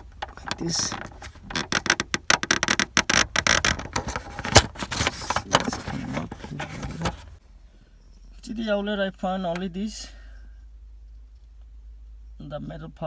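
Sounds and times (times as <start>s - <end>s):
plastic clicks and rattles: 0.0s - 7.4s.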